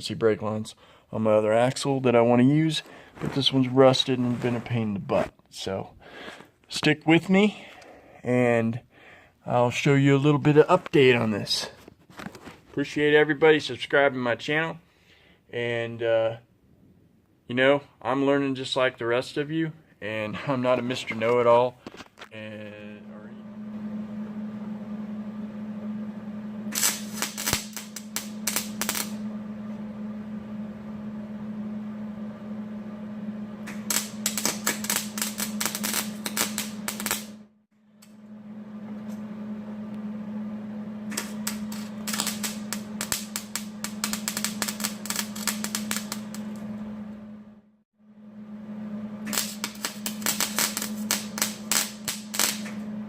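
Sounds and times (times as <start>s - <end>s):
welder low hum: 0.0s - 5.8s, 18.2s - 53.0s
welding spatter crackling: 26.7s - 29.2s, 33.7s - 37.4s, 41.1s - 46.6s, 49.2s - 52.8s.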